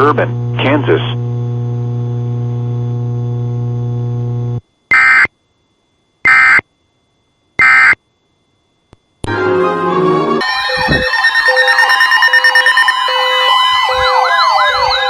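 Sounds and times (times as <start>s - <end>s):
steady electrical hum: 0.0s - 9.3s
data tone bursts: 10.4s - 15.0s.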